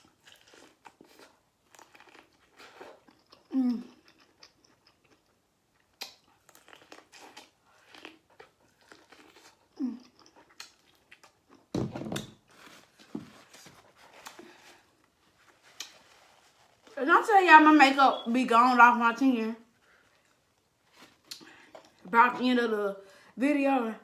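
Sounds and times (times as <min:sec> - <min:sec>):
person chewing food: 0:00.0 - 0:17.0, 0:19.8 - 0:22.0.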